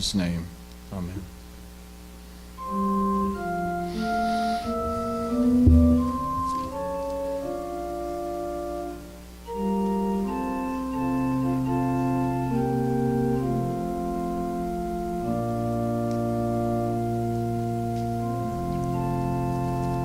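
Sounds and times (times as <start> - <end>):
organ playing sustained chords: 2.5 - 20.0
low thump: 5.6 - 6.5.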